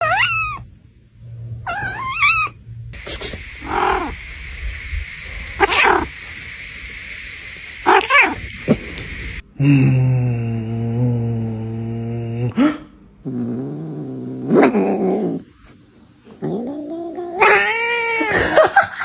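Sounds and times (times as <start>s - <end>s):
cats meowing: 0.0s - 0.7s, 1.7s - 2.6s, 3.4s - 4.3s, 5.4s - 6.4s, 16.8s - 18.4s
steady hiss: 0.7s - 9.8s.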